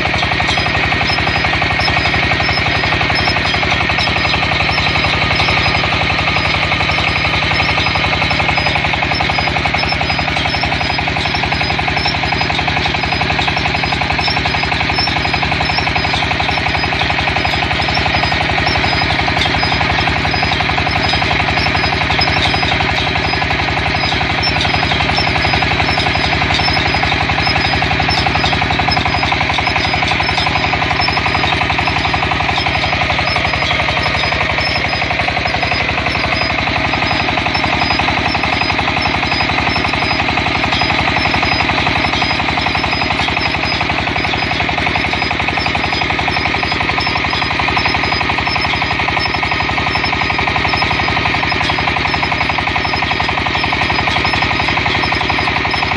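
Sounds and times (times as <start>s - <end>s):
drilling rig rapid clatter: 0.0s - 55.9s.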